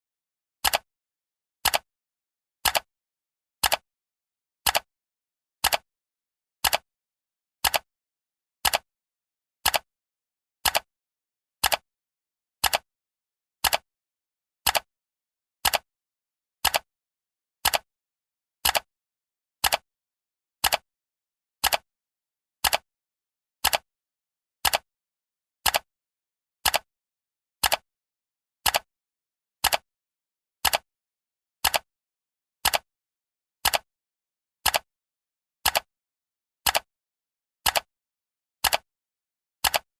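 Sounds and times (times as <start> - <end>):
clock ticking: 39.6 - 39.9.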